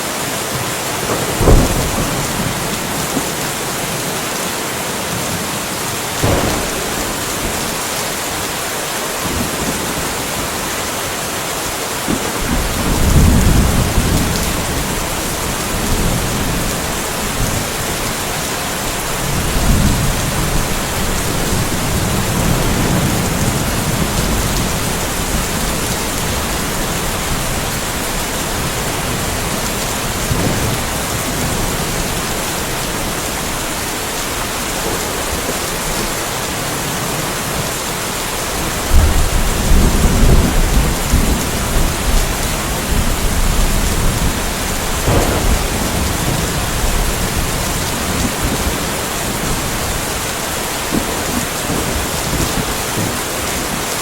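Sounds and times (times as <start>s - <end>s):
steady rain falling: 0.0s - 54.0s
rolling thunder rumbling: 0.9s - 4.1s, 6.1s - 10.8s, 12.0s - 37.7s, 38.4s - 53.9s.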